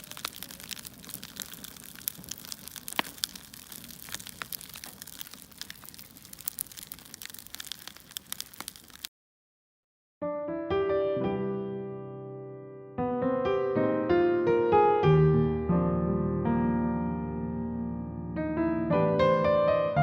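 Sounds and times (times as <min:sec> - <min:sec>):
crackling fire: 0:00.0 - 0:09.1.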